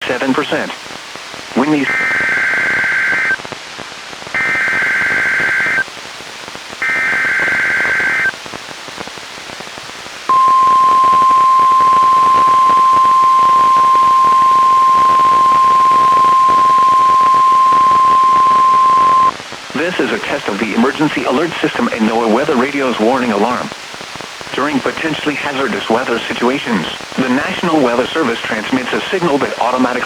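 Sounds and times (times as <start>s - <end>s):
radio hiss: 0.0s - 30.0s
data tone bursts: 4.4s - 5.8s, 6.8s - 8.3s, 10.3s - 19.3s
steady warning alarm tone: 4.4s - 5.8s, 6.8s - 8.3s, 10.3s - 19.3s.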